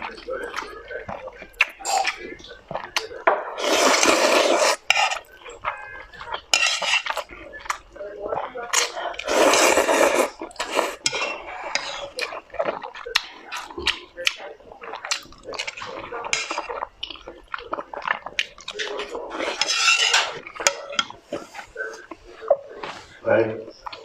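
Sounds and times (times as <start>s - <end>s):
utensils clinking against dishes: 6.3s - 7.3s, 8.7s - 12.4s, 15.1s - 16.8s, 18.7s - 21.7s.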